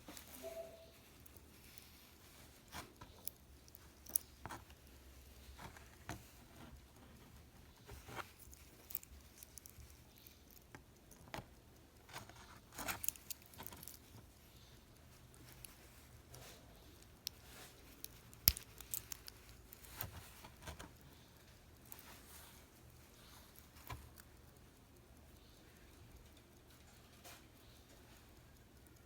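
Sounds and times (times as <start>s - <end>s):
wristwatch clicks and rattles: 1.2s - 6.2s, 8.0s - 24.5s.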